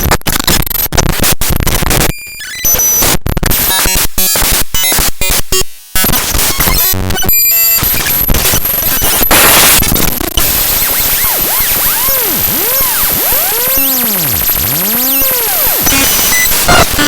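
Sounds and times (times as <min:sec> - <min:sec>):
harsh static noise: 0:00.0 - 0:17.0
swooping tones: 0:11.2 - 0:17.0.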